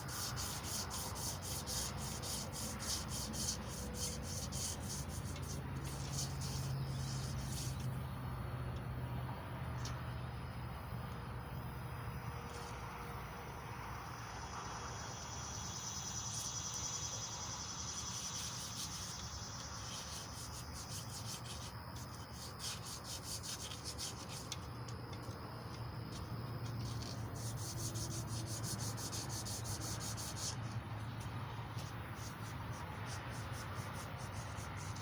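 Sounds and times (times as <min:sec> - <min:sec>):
emery cloth rubbing on metal: 0:00.0 - 0:07.9, 0:18.0 - 0:24.7, 0:26.8 - 0:30.8.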